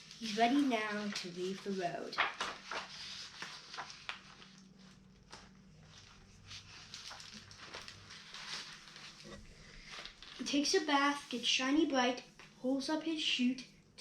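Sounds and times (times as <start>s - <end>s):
low steady hum: 0.0s - 14.0s
faint light ticks and rustles: 0.1s - 10.6s.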